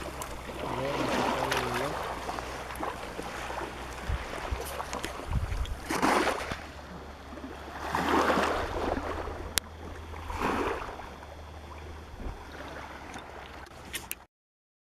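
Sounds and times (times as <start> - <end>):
low rumble: 0.0 - 13.9
small waves washing ashore: 0.0 - 14.2
sharp click: 13.9 - 14.2.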